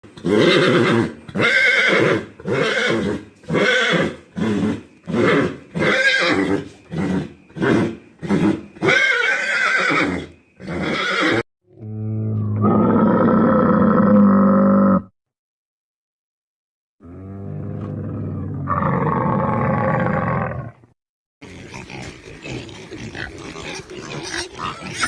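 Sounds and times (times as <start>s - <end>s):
horse whinnying: 0.2s - 11.4s
deep low animal call: 10.6s - 15.1s, 17.0s - 20.8s.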